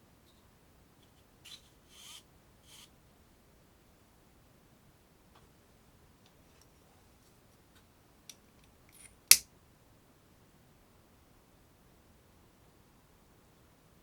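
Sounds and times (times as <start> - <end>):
sharp click: 8.9 - 9.4.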